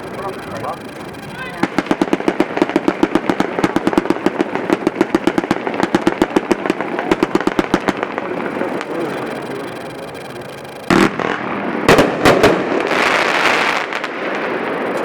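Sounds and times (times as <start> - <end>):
faint popping and hiss: 0.0 - 15.0
firework cake firing shots: 0.2 - 15.0.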